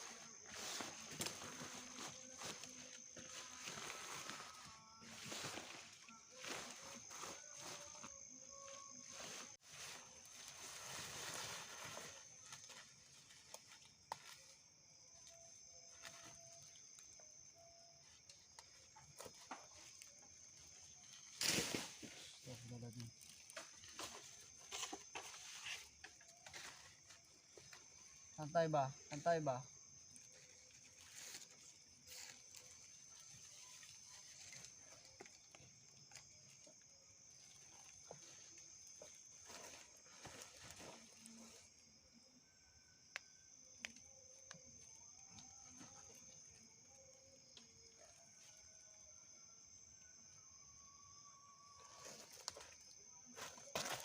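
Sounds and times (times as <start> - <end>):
insect droning: 0.0 - 54.0
soft rustle: 9.1 - 13.5.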